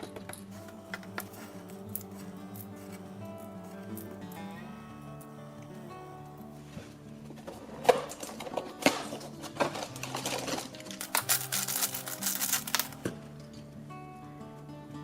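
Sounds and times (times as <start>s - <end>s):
background music: 0.0s - 15.0s
packaging crinkling: 9.7s - 13.1s
plastic toy pieces clicking: 10.0s - 13.0s.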